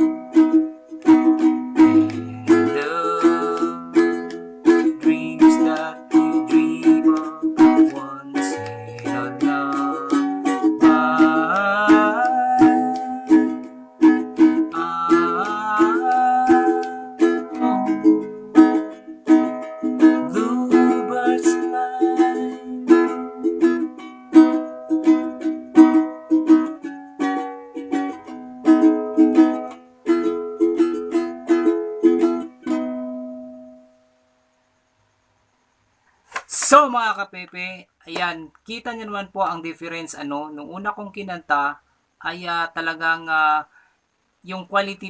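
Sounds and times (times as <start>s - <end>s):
ukulele strumming: 0.0s - 33.8s.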